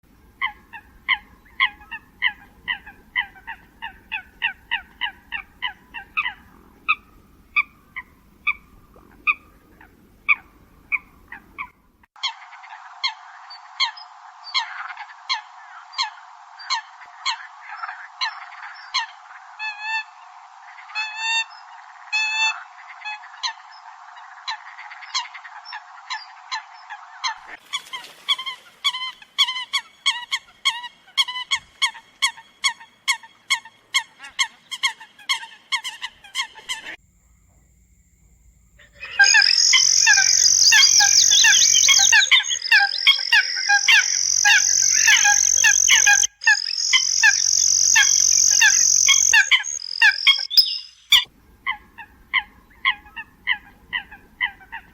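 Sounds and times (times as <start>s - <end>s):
coots honking calls: 38.8s - 54.9s.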